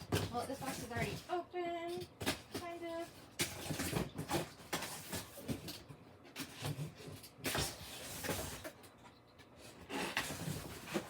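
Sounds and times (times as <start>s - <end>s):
cardboard rustling and scraping: 0.0s - 1.4s, 3.4s - 8.8s, 9.6s - 11.0s.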